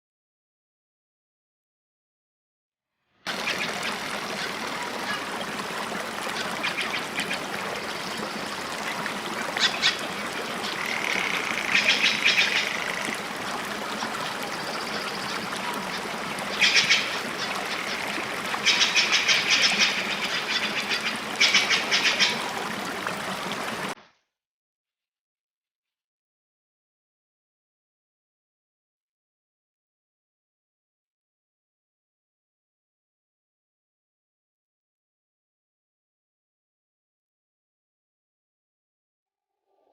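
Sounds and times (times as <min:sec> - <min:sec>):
flowing water: 0:03.3 - 0:24.0
rattling animal calls: 0:09.6 - 0:22.4.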